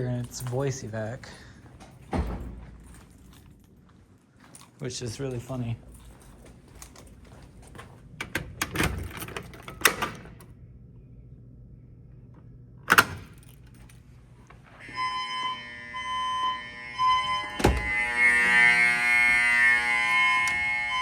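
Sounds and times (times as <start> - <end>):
fire alarm buzzing: 14.6 - 21.0.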